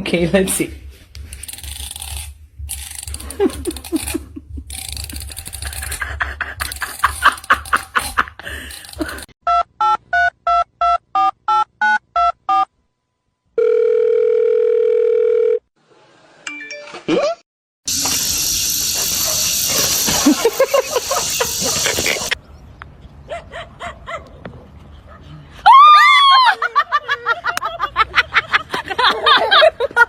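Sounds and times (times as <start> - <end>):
clicking and rustling: 1.1 - 9.3
steady telephone tone: 13.6 - 15.7.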